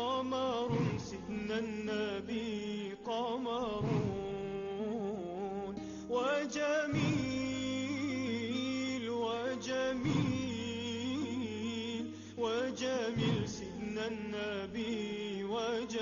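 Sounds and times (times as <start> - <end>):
instrumental backing: 0.0 - 16.0
person singing ornamented melody: 0.0 - 16.0
drum-like hits: 0.6 - 1.8, 3.8 - 4.4, 6.9 - 7.8, 10.0 - 10.7, 13.2 - 13.9.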